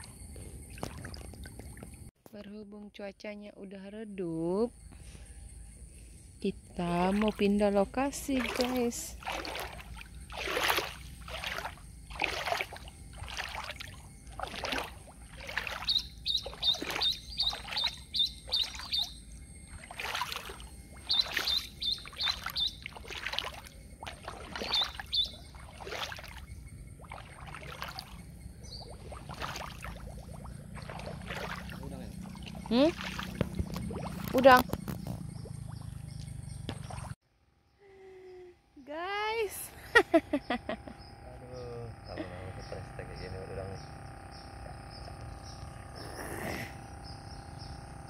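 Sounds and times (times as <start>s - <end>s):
bird chirping: 15.4s - 19.3s, 21.0s - 23.2s, 24.4s - 26.1s, 28.6s - 29.4s, 31.7s - 37.1s, 40.3s - 47.9s.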